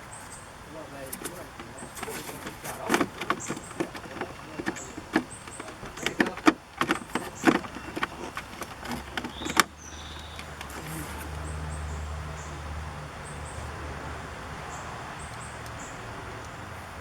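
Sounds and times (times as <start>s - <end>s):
plastic clicks and knocks: 1.1s - 11.2s.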